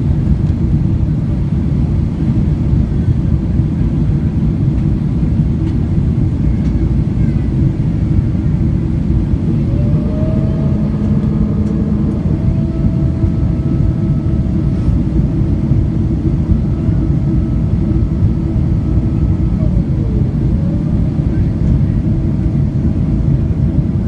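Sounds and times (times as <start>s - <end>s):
airliner cabin engine rumble: 0.0s - 24.0s
whining tone: 8.6s - 23.6s.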